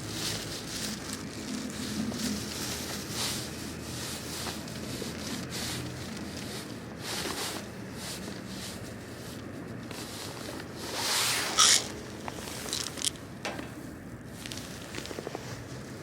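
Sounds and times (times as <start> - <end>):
rustling: 0.0 - 16.0
sharp scraping burst: 11.0 - 11.9.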